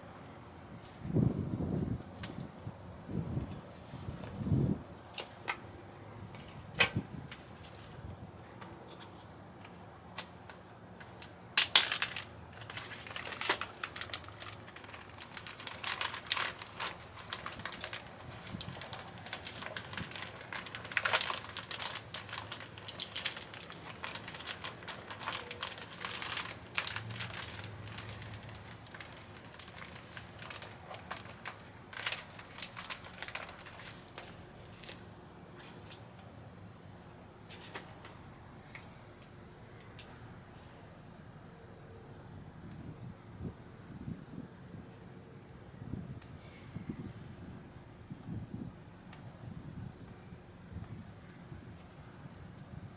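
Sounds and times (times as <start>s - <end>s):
plastic bag crinkling: 11.0s - 35.0s.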